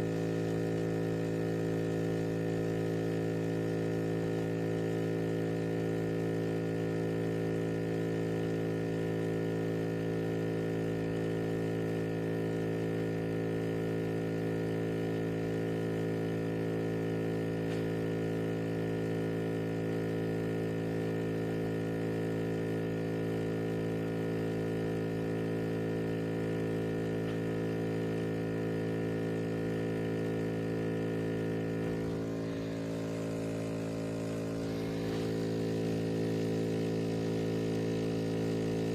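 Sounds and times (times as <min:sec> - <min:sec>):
electrical buzzing hum: 0:31.0 - 0:38.9.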